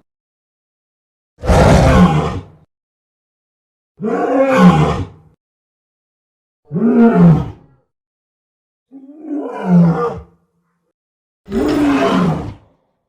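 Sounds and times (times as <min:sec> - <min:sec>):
gorilla roars: 0:01.4 - 0:02.6, 0:08.9 - 0:10.4, 0:11.5 - 0:12.8.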